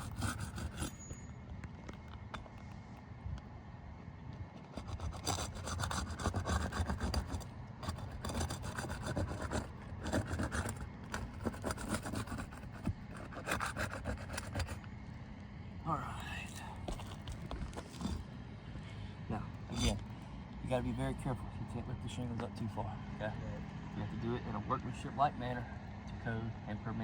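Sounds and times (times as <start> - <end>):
scraping on roof shingles: 4.6 - 14.8, 16.8 - 18.3.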